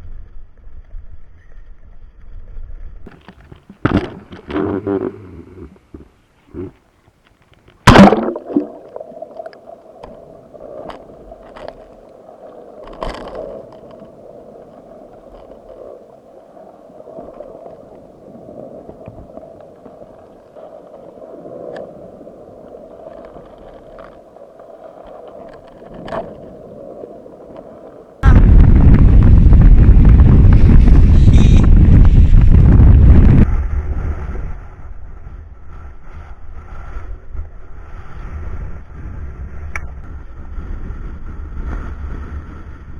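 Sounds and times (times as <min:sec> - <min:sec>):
muffled underwater sound: 0:02.9 - 0:06.9
sharp knock underwater: 0:07.8 - 0:09.2
wind buffeting microphone: 0:28.2 - 0:42.9.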